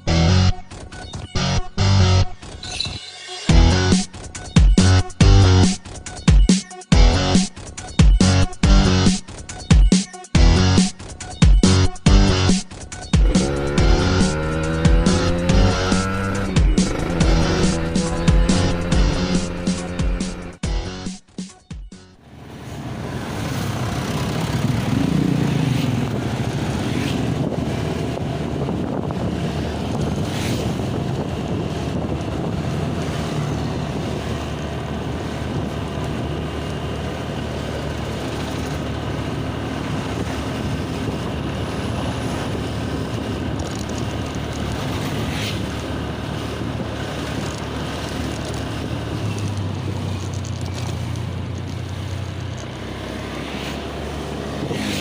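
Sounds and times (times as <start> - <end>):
road traffic passing: 10.4 - 21.1, 22.0 - 55.0
wind buffeting microphone: 23.7 - 36.9, 39.0 - 52.9.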